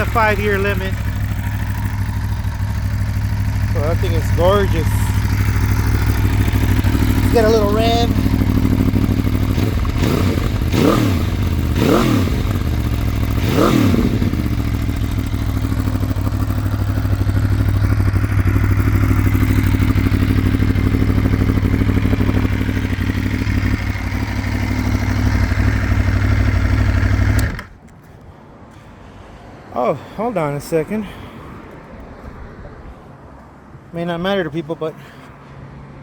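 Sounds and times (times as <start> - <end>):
motorcycle engine idling: 0.0 - 27.8
motorcycle engine revving: 0.0 - 27.8.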